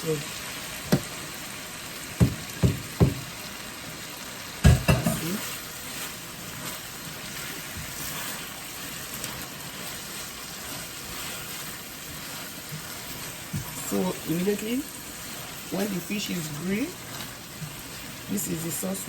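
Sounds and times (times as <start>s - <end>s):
sauce sizzling in a pan: 0.0s - 19.0s
utensil knocking against pan: 2.2s - 3.2s, 4.6s - 5.2s.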